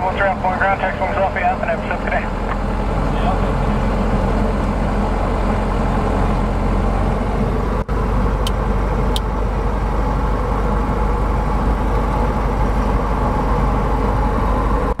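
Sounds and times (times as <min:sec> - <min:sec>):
propeller engine running: 0:00.0 - 0:15.0.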